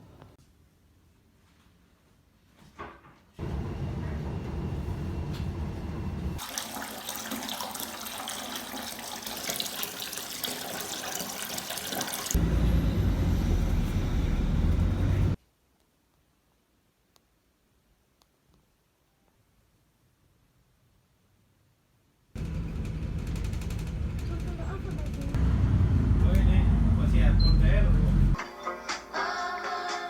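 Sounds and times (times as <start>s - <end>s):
running water rushing: 6.4s - 12.4s.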